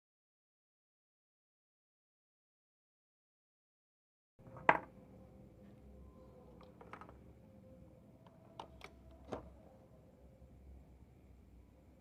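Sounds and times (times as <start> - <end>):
faint steady hum: 4.4 - 12.0.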